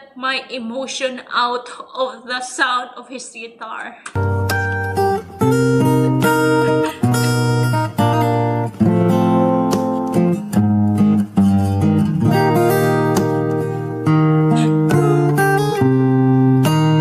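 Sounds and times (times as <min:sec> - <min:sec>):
fingerstyle acoustic guitar: 0:04.2 - 0:17.0.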